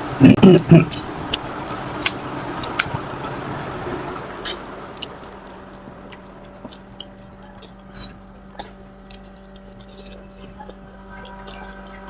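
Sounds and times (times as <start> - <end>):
low hum: 0.0 - 12.0
soft chewing: 4.4 - 12.0
crisp shells crunching: 6.1 - 11.9.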